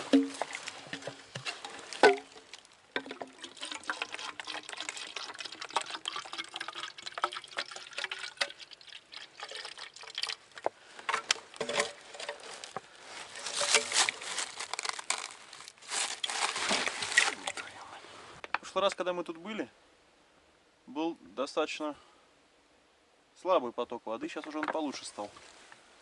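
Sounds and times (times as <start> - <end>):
spring water trickling: 0.0 - 17.8.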